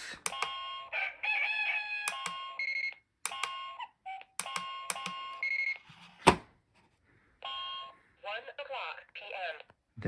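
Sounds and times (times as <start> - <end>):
synthesized rooster crow: 0.7 - 2.5
sharp clicks: 2.1 - 2.4, 3.3 - 3.6, 4.4 - 5.2.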